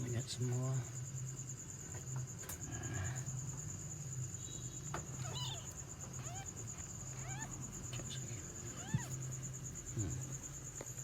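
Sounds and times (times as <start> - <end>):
kittens mewing: 5.2 - 8.0, 8.6 - 10.3.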